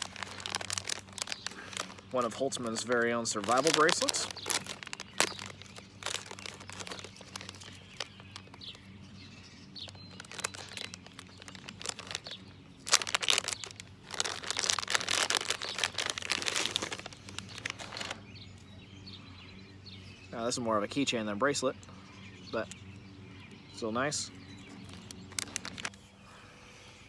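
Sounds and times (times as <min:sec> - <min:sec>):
plastic wrapping crinkling: 0:00.0 - 0:08.9, 0:09.7 - 0:18.2, 0:24.6 - 0:26.0.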